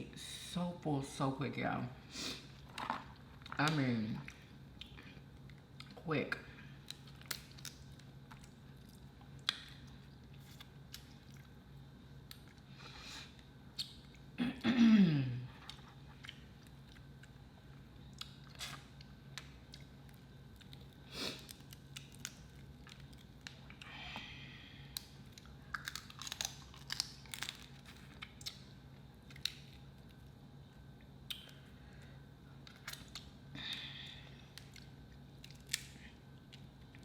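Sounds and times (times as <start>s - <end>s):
faint low hum: 0.0s - 37.0s
quiet chewing: 4.2s - 6.0s, 6.7s - 14.3s, 15.5s - 24.2s.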